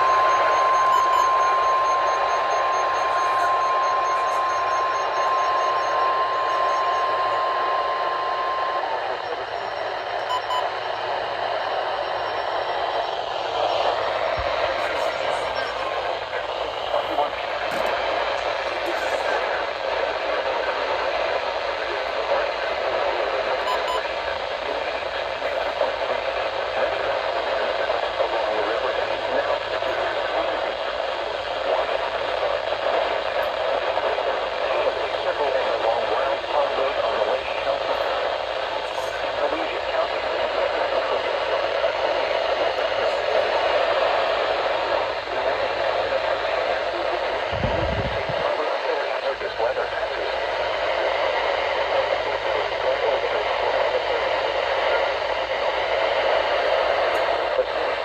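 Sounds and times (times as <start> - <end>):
steady high alarm beep: 0.0 - 17.1, 23.6 - 24.1
radio static hiss: 0.0 - 58.0.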